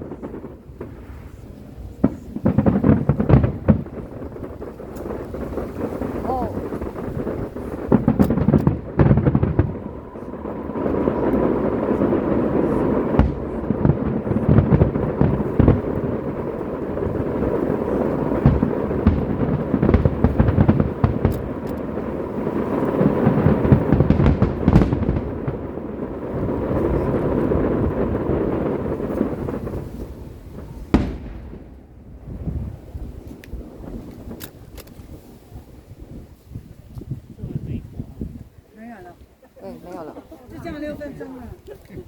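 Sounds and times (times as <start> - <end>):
continuous rumble: 0.0 - 33.2
fireworks booming: 0.0 - 38.6
fireworks crackling: 0.0 - 42.0.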